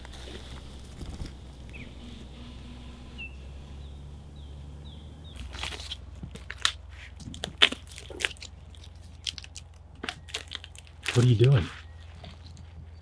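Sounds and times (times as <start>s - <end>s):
faint high chirp: 0.0s - 5.6s
low hum: 0.0s - 11.1s
crunches and cracks: 0.0s - 13.0s.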